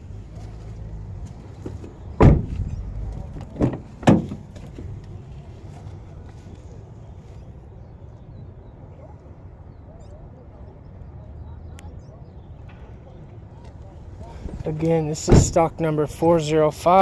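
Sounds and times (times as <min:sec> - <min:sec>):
car doors shutting: 0:01.6 - 0:05.0, 0:14.4 - 0:15.8.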